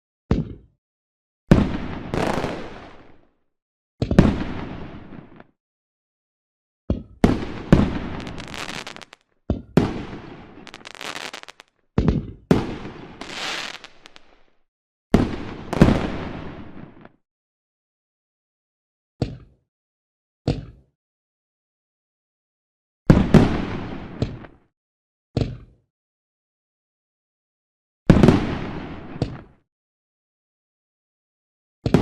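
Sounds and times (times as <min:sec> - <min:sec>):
fireworks exploding: 0:01.5 - 0:03.2, 0:04.2 - 0:05.5, 0:07.2 - 0:09.2, 0:09.8 - 0:11.7, 0:12.5 - 0:14.5, 0:15.2 - 0:17.1.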